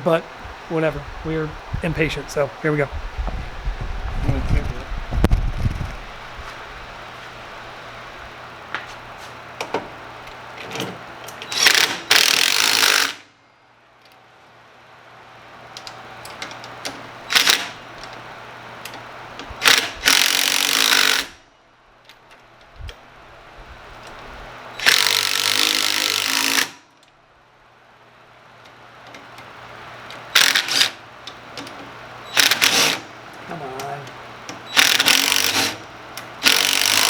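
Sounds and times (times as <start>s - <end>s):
handheld power tool running: 11.5s - 13.2s, 19.6s - 21.3s, 24.8s - 26.8s, 30.3s - 31.0s, 32.3s - 33.0s, 34.7s - 35.8s, 36.4s - 37.0s.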